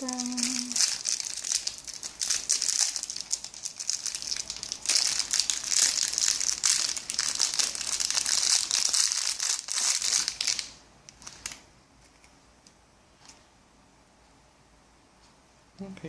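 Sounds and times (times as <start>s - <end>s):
plastic wrapper crinkling: 0.0s - 12.2s.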